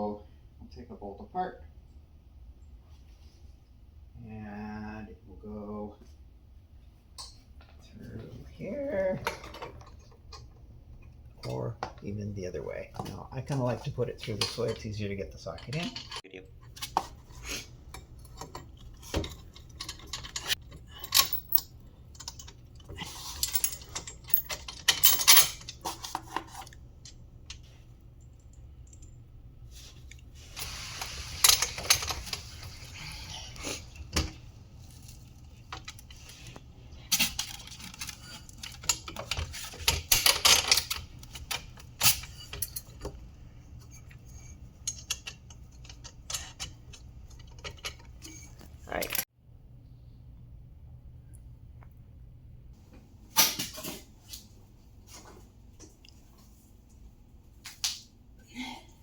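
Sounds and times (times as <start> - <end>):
bolts and nuts clinking: 8.8 - 12.3, 13.0 - 29.3, 30.6 - 33.0, 33.8 - 49.2.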